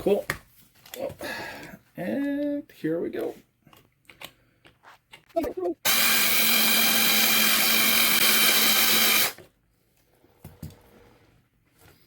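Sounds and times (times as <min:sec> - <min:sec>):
power drill drilling: 0:05.9 - 0:09.4.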